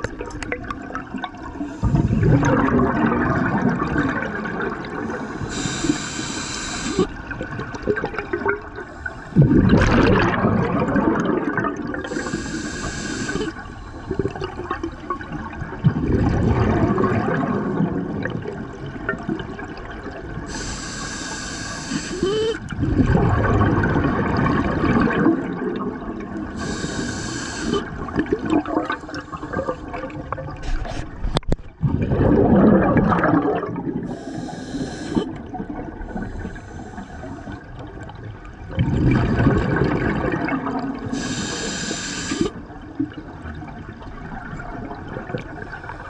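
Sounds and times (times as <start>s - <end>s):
exhaled bubbles rumbling: 0.0s - 46.0s
hissing regulator inhalations: 1.6s - 2.5s, 5.2s - 7.2s, 8.9s - 9.6s, 12.1s - 15.2s, 20.5s - 22.6s, 26.5s - 28.0s, 34.1s - 35.4s, 36.1s - 37.7s, 41.1s - 42.6s.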